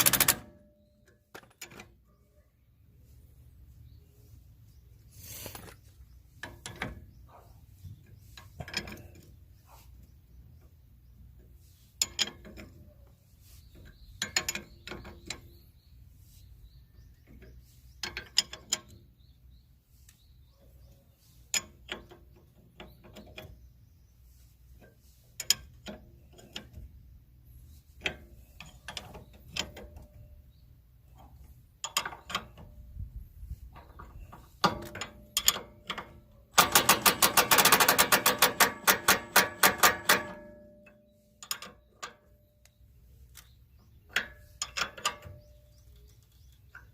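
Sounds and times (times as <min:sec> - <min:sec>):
ratchet wrench clicking: 0:00.0 - 0:00.4, 0:34.9 - 0:40.4.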